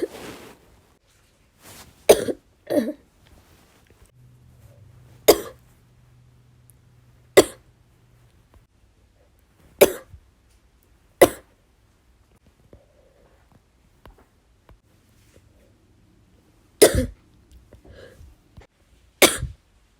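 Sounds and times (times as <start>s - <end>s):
woman coughing: 2.1s - 3.0s, 5.3s - 5.6s, 7.4s - 7.6s, 9.8s - 10.2s, 16.8s - 17.2s, 19.2s - 19.6s.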